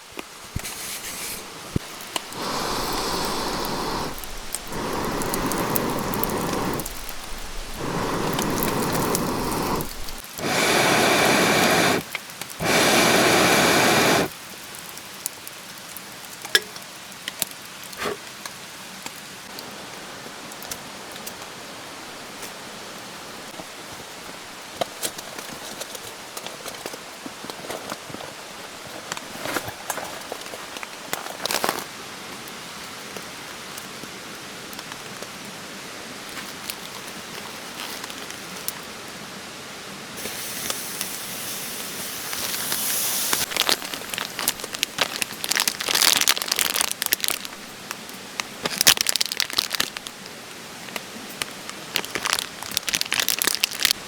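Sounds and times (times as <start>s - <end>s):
crinkling and crackling: 0.0s - 12.8s, 24.7s - 31.9s, 36.3s - 38.8s, 42.2s - 54.0s
steady rushing hiss: 0.0s - 14.4s, 40.2s - 54.0s.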